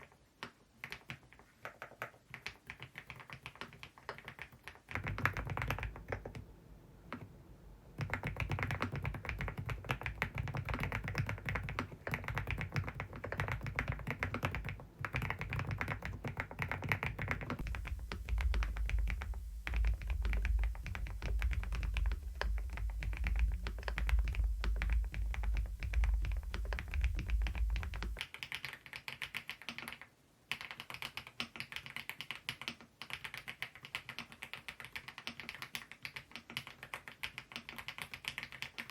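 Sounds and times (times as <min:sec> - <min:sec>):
mechanical keyboard typing: 0:00.0 - 0:06.4, 0:08.0 - 0:38.9
low rumble: 0:17.6 - 0:28.2.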